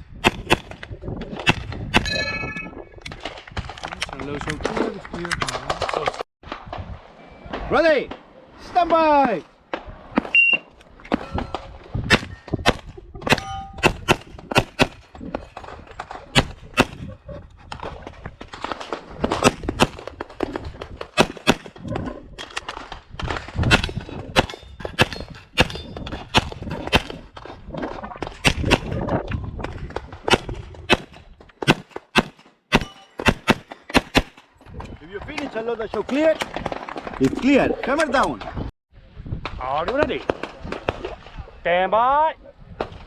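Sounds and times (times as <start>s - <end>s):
bullets clanging on steel targets: 13.3s - 14.0s, 32.7s - 33.4s.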